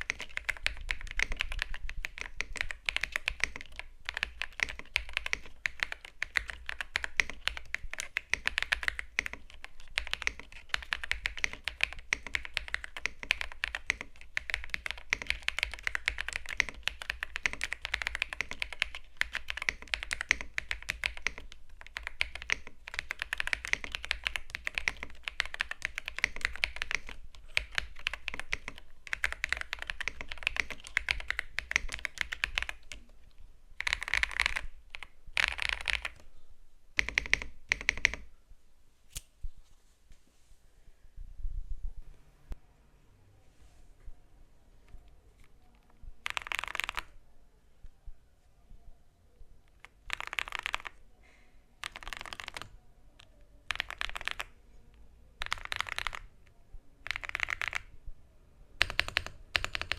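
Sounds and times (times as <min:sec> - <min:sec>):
mechanical keyboard typing: 0:00.0 - 0:33.2, 0:33.8 - 0:36.2, 0:37.0 - 0:38.3, 0:46.2 - 0:47.1, 0:49.8 - 0:51.0, 0:51.8 - 0:52.7, 0:53.6 - 0:54.5, 0:55.4 - 0:57.9, 0:58.8 - 0:59.9.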